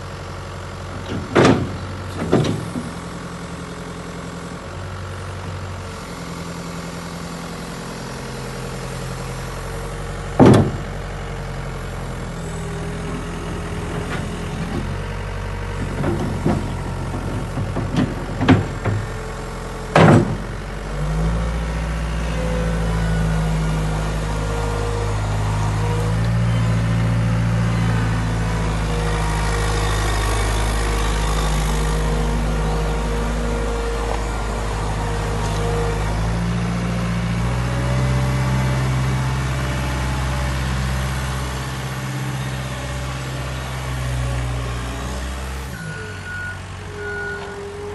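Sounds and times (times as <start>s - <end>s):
diesel engine running: 0.0s - 47.9s
sharp loud clunks: 1.0s - 2.9s, 10.4s - 10.9s, 19.9s - 20.5s.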